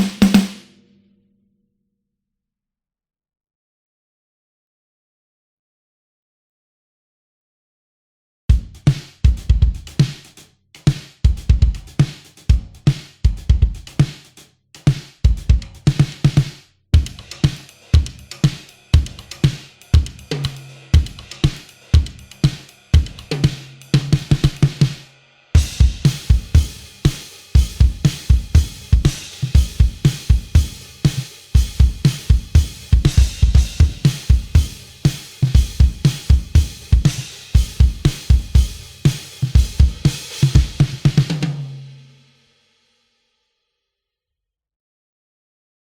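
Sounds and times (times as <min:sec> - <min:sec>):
drum kit groove: 0:00.0 - 0:00.7, 0:08.5 - 0:42.2.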